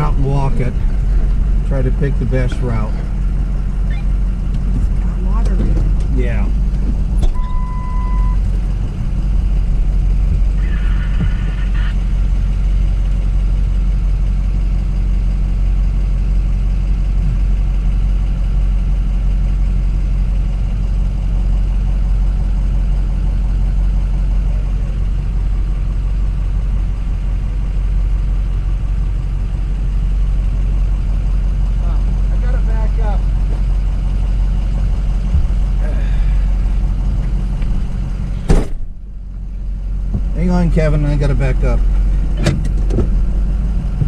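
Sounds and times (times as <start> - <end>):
truck engine rumbling: 0.0 - 44.0
short beep: 7.2 - 8.4.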